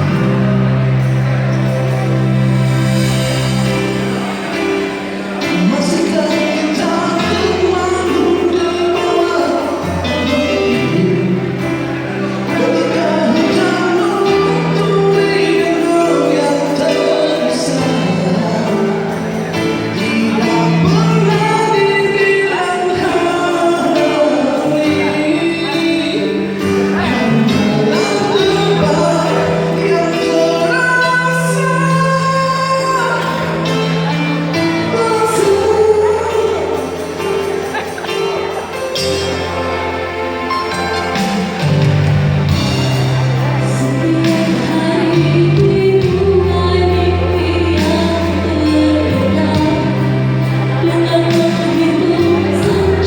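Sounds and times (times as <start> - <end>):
instrumental accompaniment: 0.0 - 53.0
woman singing: 5.5 - 11.5, 12.5 - 19.2, 20.0 - 37.4, 43.6 - 53.0.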